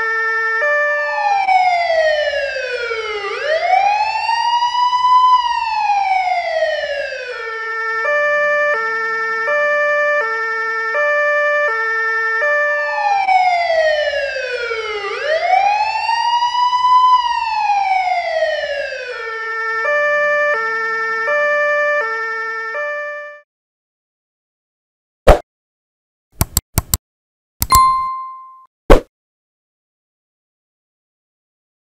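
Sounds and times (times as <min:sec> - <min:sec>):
police siren wailing: 0:00.0 - 0:23.4
two-tone siren: 0:00.0 - 0:23.5.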